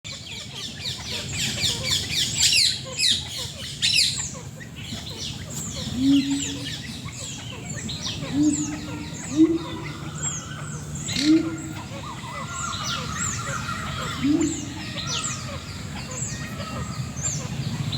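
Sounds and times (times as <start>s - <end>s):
birds chirping: 0.1s - 17.9s
short low bird calls: 5.8s - 17.9s.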